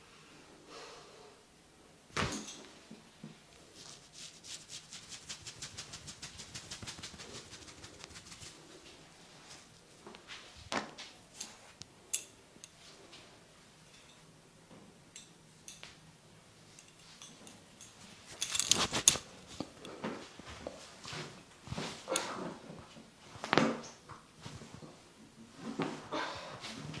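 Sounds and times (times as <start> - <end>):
fast tapping massage strokes: 3.7 - 9.0
sharp massage impacts: 3.8 - 8.6.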